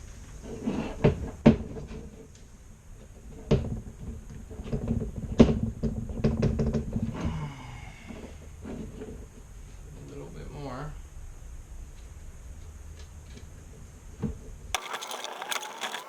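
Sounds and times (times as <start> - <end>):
small clicks of parts: 14.8 - 16.0.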